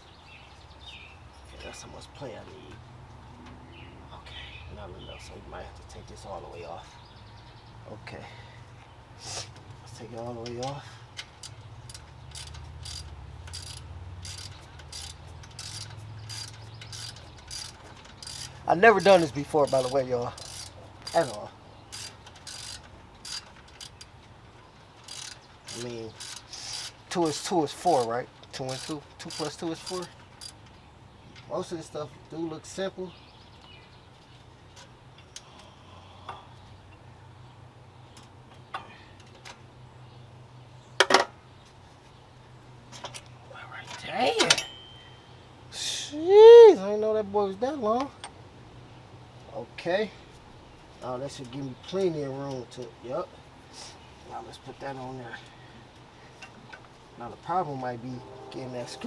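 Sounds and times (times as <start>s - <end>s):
ratchet wrench clicking: 11.2s - 24.1s, 25.0s - 30.6s
low steady hum: 56.3s - 59.0s.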